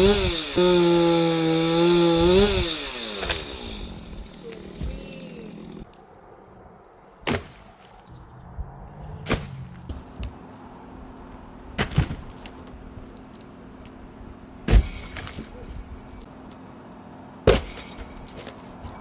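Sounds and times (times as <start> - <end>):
sharp thumps: 7.2 - 10.5, 14.6 - 16.3, 17.4 - 19.0.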